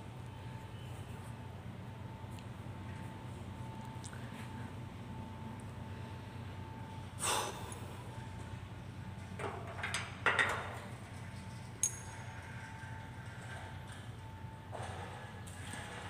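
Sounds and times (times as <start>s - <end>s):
steady low hum: 0.0s - 16.0s
sharp metallic clink: 11.8s - 12.2s.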